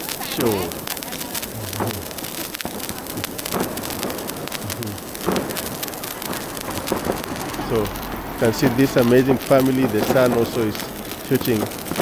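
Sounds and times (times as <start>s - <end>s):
fireworks crackling: 0.0s - 12.0s
low thuds: 1.5s - 12.0s.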